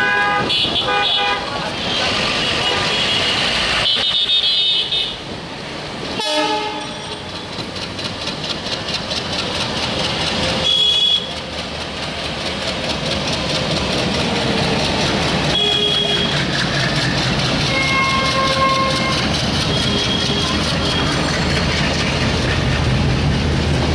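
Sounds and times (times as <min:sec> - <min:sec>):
diesel train running: 0:00.0 - 0:23.9
high-pitched train horn toot: 0:06.2 - 0:07.3, 0:10.6 - 0:11.3, 0:15.5 - 0:16.4, 0:17.7 - 0:20.6.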